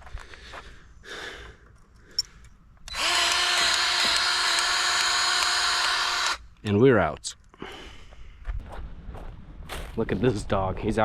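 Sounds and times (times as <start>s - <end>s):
grease gun motor running: 2.9s - 6.4s.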